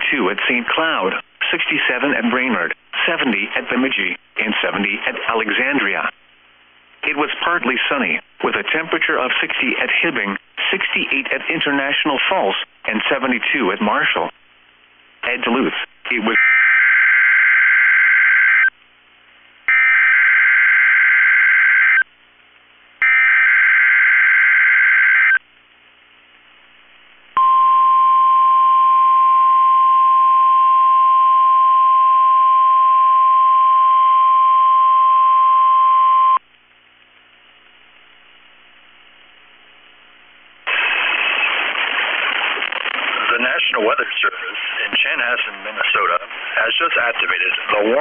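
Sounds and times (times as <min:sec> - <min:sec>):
steady warning alarm tone: 0:19.7 - 0:22.0, 0:23.0 - 0:25.4.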